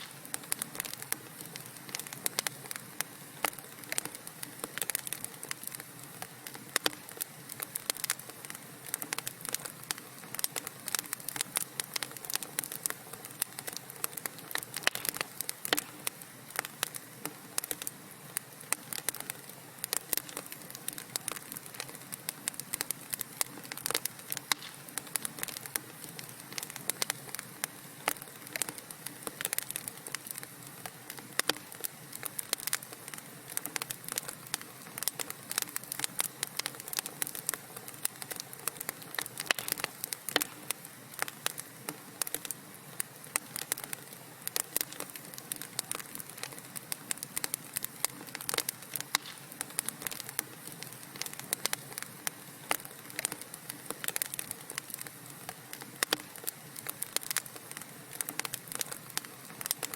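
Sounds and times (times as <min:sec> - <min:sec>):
soft hiss: 0:00.0 - 0:59.9
wood fire crackling: 0:00.0 - 0:59.9.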